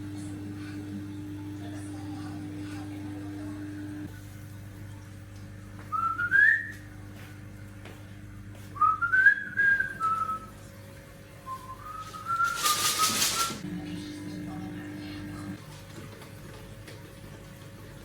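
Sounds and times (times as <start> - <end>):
person whistling a tune: 5.9 - 6.8, 8.8 - 10.5.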